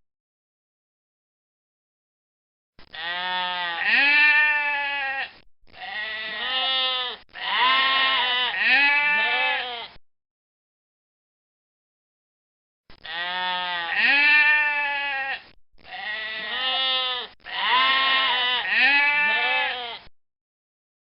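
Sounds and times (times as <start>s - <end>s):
goat bleating: 2.9s - 10.0s, 13.0s - 20.1s.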